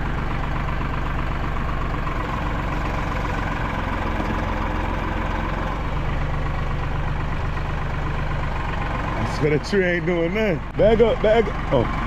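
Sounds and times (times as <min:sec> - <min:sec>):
tractor engine running: 0:00.0 - 0:12.0.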